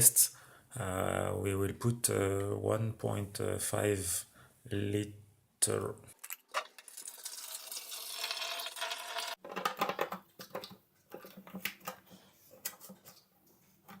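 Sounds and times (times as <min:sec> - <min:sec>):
water pouring into plastic tank: 0:06.8 - 0:09.4.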